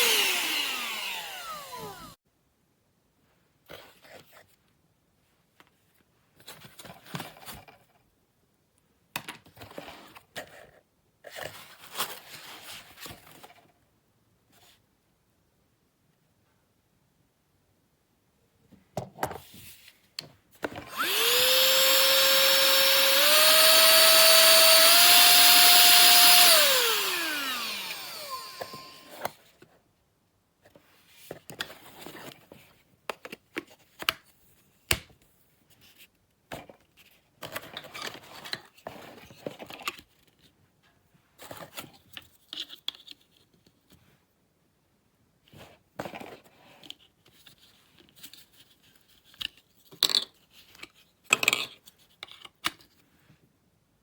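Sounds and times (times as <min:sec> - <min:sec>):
handheld vacuum motor whine: 0:00.0 - 0:02.2, 0:20.7 - 0:29.3.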